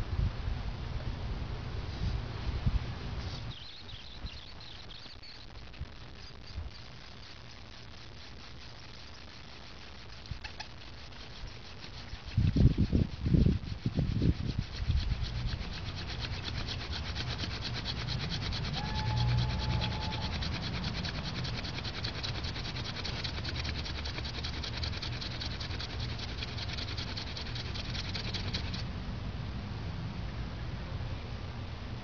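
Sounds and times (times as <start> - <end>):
spindle rubbing on wood: 4.4 - 28.9.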